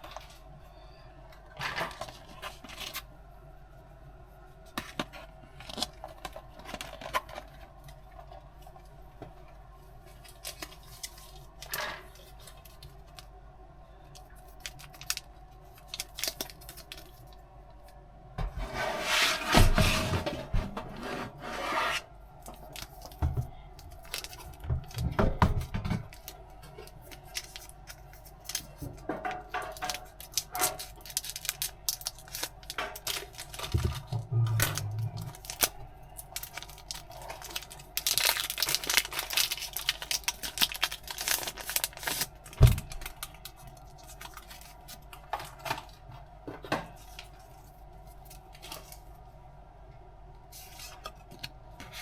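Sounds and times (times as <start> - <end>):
wrapping rubbing and tearing: 29.8 - 45.2.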